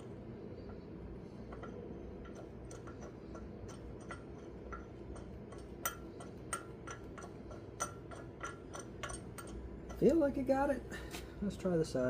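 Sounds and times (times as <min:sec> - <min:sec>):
metallic clicks of bolts: 0:01.5 - 0:10.1.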